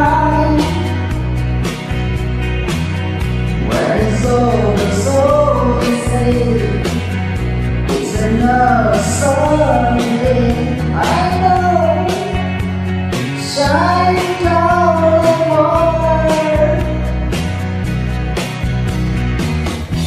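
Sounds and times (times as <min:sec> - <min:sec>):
solo vocal song: 0:00.0 - 0:01.3, 0:03.5 - 0:07.1, 0:07.8 - 0:12.6, 0:13.2 - 0:17.2
drums and bass beat: 0:00.0 - 0:20.0.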